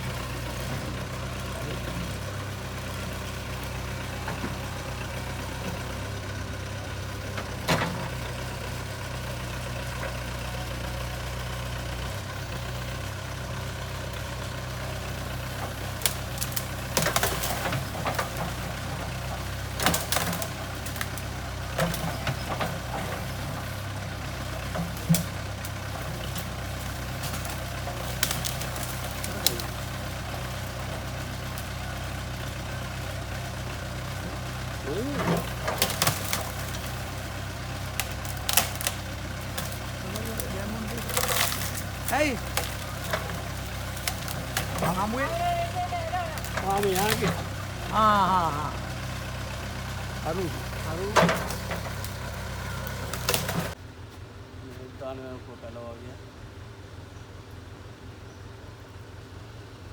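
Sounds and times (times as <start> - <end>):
diesel engine running at low revs: 0.0 - 59.9.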